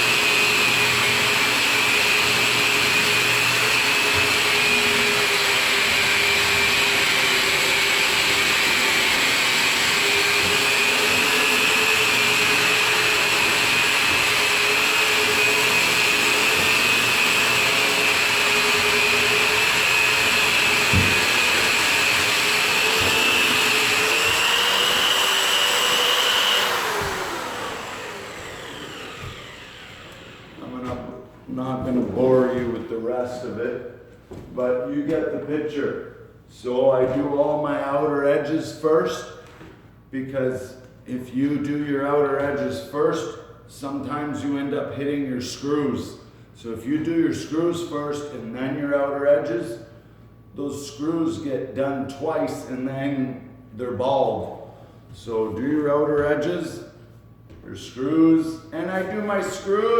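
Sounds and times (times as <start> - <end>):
electric sander whining: 0.0 - 31.0
sander winding down: 0.0 - 31.0
sander pad knocking: 18.0 - 25.2, 26.6 - 31.1.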